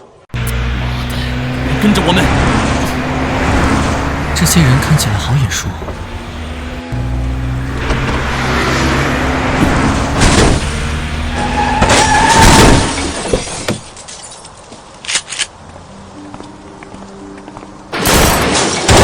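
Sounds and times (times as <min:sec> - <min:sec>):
vehicle rushing past: 0:00.4 - 0:13.3.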